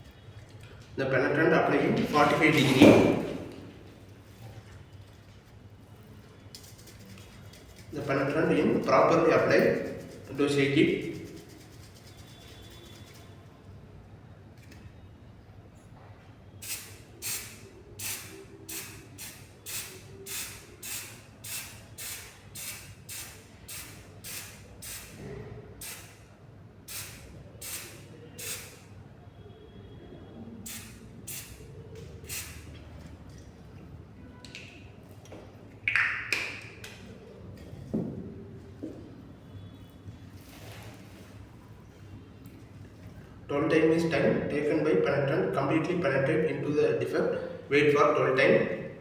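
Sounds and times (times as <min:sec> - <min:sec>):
aerosol can spraying puffs: 0:16.6 - 0:25.2, 0:25.8 - 0:26.3, 0:26.9 - 0:28.9, 0:30.7 - 0:31.6, 0:32.2 - 0:32.7.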